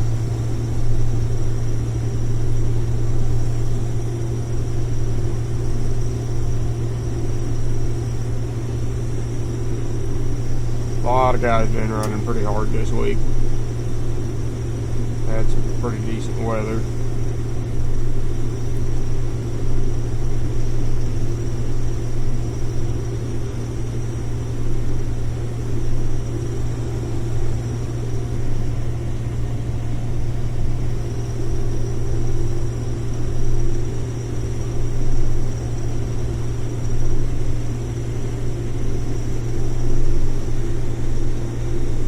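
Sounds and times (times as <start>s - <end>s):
combine harvester engine droning: 0.0s - 42.0s
faint high whine: 0.0s - 42.0s.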